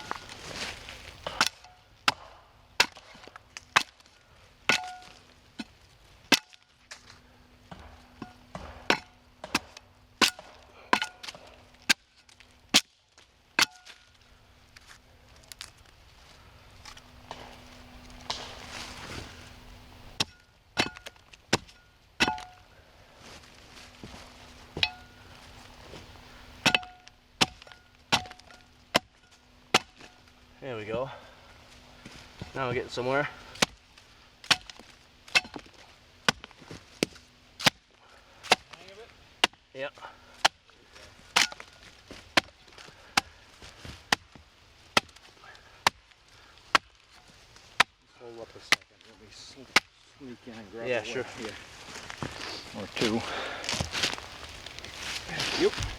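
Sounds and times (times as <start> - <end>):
axe chopping log: 1.2 - 4.1, 4.7 - 5.7, 6.3 - 6.6, 7.7 - 12.1, 12.7 - 12.9, 13.6 - 14.0, 20.1 - 22.6, 26.6 - 30.2, 33.5 - 33.8, 34.4 - 37.8, 38.4 - 39.6, 40.4 - 40.7, 41.3 - 46.0, 46.6 - 47.0, 47.7 - 48.0, 49.7 - 50.0
metallic ring: 24.8 - 25.2.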